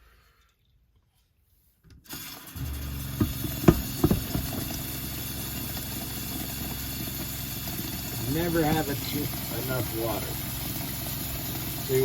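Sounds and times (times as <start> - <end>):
tap running water into pot: 2.2 - 12.0
steady hum: 2.6 - 12.0
pot clunks: 3.2 - 4.9.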